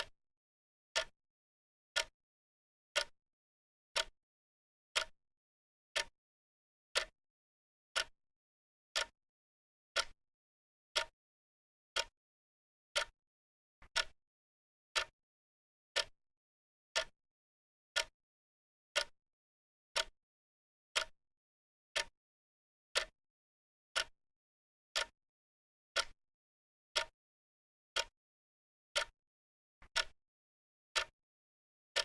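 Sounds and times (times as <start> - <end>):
clock ticking: 10.0 - 10.2, 13.9 - 14.2, 26.0 - 26.2, 29.9 - 30.2.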